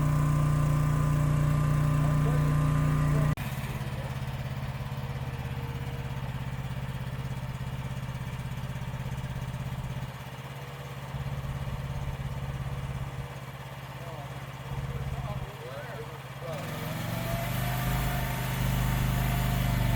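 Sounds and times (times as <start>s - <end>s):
small diesel engine idling: 0.0s - 19.9s.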